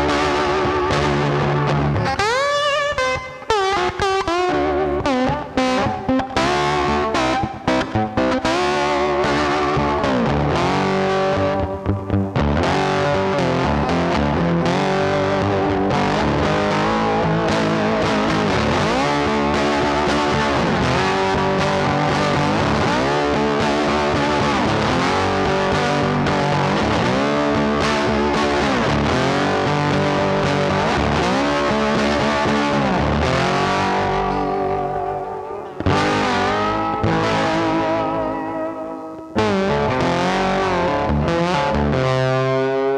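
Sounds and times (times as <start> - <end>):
rock music with distorted guitar: 0.0 - 42.9.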